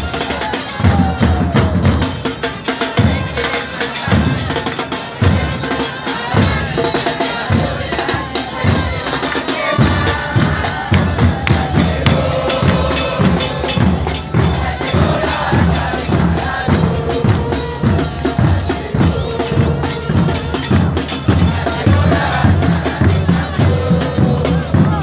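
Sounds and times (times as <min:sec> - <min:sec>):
band playing a tune: 0:00.0 - 0:25.0
bass drums beating: 0:09.8 - 0:25.0.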